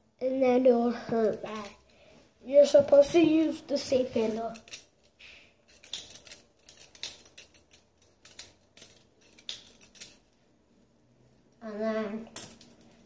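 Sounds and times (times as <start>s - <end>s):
butterfly comb handles clacking: 4.5s - 10.3s.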